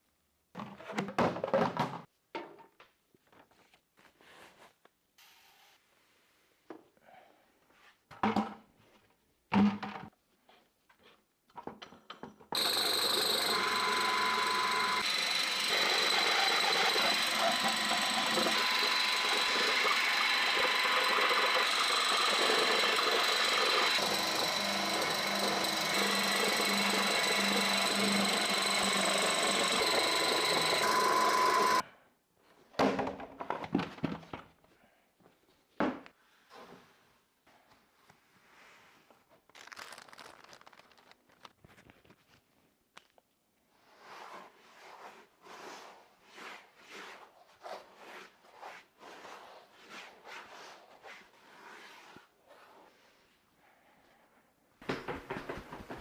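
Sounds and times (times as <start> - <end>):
small electric motor whining: 12.6 - 31.8
handling rustling and knocks: 54.8 - 56.0.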